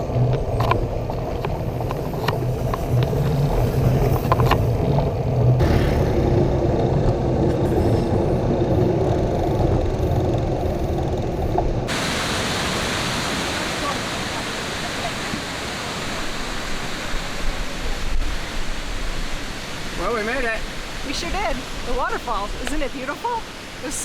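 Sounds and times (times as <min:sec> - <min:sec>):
waterfall rushing: 0:11.9 - 0:24.0.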